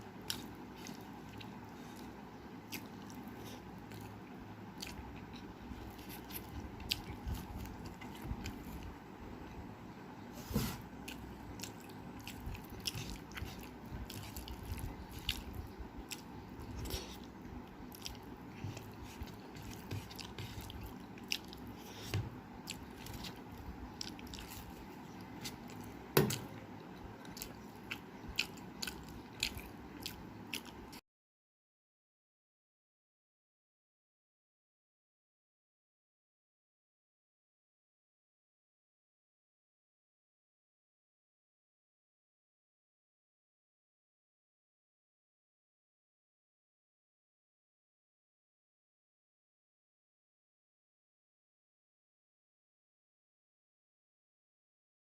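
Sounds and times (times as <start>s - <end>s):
close chewing mouth sounds: 0.0s - 9.0s, 11.0s - 31.0s.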